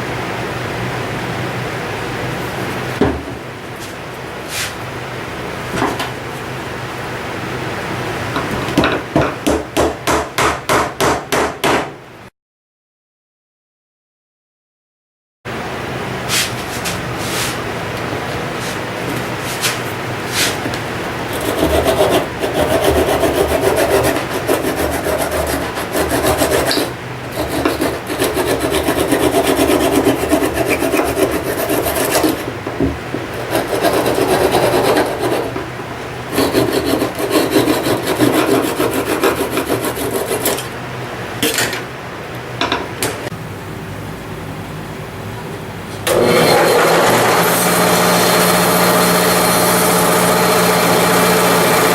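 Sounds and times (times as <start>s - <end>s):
sanding wood by hand: 16.3s - 17.6s, 18.6s - 20.7s, 21.3s - 32.5s, 33.3s - 35.6s, 36.3s - 40.7s.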